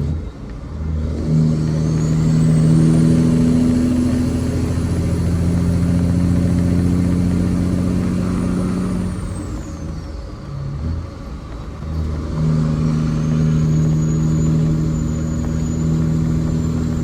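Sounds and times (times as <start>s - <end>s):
diesel truck engine running: 0.0s - 17.0s
thin high whine: 12.4s - 17.0s.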